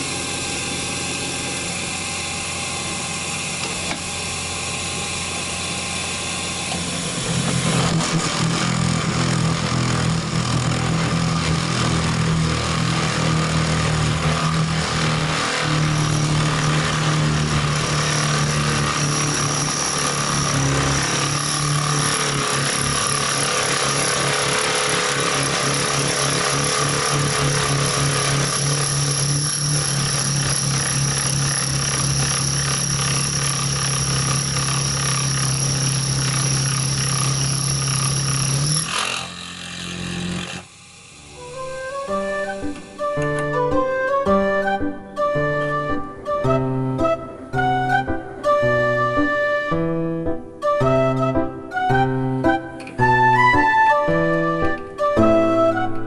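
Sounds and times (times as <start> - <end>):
electric drill boring into metal: 0.0 - 42.0.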